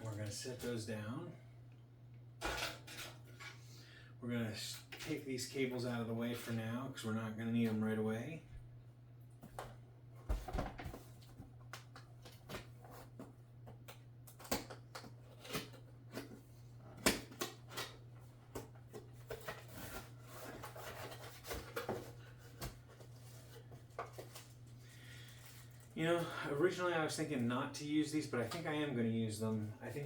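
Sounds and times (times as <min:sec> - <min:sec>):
hands handling cables and parts: 0:17.0 - 0:24.7.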